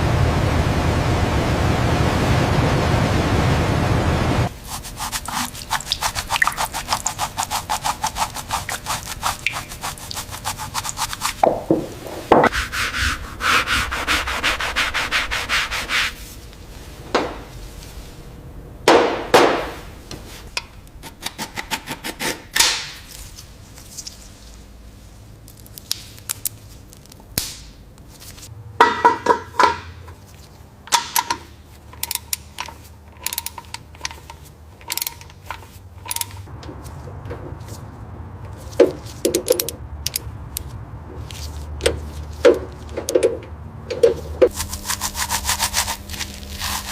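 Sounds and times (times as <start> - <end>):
repeated rubbing strokes: 4.5 - 18.2, 40.6 - 42.9, 44.1 - 46.9.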